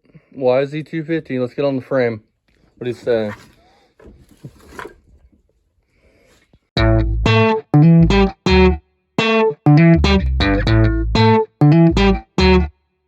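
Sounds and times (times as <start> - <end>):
plucked guitar chords: 6.8 - 12.8.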